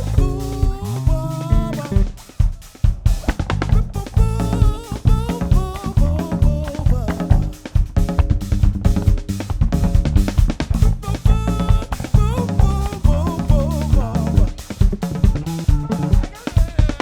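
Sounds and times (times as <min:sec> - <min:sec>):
wavering melody line: 0:00.0 - 0:02.1
heavy bass: 0:00.0 - 0:17.0
live band playing upbeat song: 0:00.0 - 0:17.0
snare and kick drum: 0:00.0 - 0:17.0.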